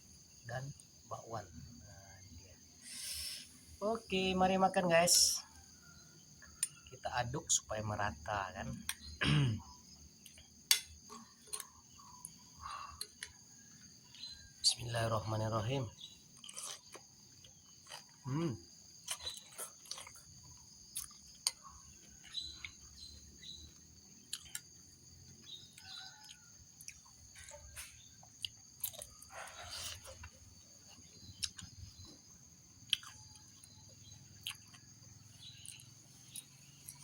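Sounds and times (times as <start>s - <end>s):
crickets chirping: 0.0s - 37.0s
chewing crunchy fried food: 10.2s - 14.5s, 16.0s - 37.0s.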